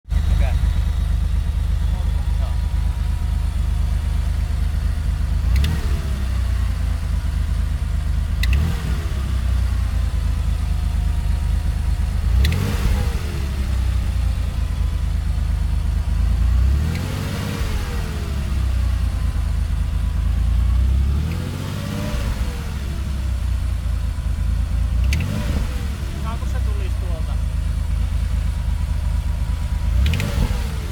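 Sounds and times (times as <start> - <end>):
car engine idling and revving: 0.0 - 30.9
sharp click: 5.5 - 5.9, 8.4 - 8.8, 12.4 - 12.7, 21.3 - 21.5, 25.0 - 25.4, 30.0 - 30.5.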